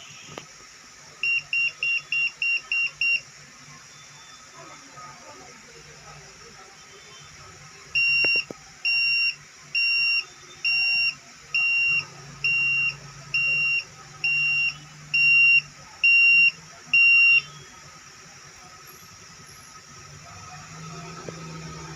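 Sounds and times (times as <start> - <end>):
high-pitched alarm buzzer beeps: 1.2 - 4.7, 8.0 - 17.8.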